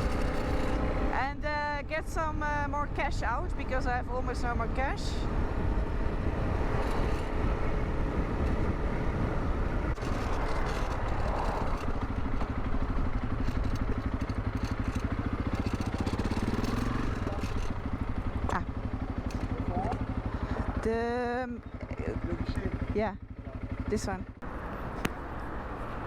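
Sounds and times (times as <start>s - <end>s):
wind noise: 0.0s - 14.3s
motorcycle engine running: 0.0s - 26.0s
road noise: 0.0s - 26.0s.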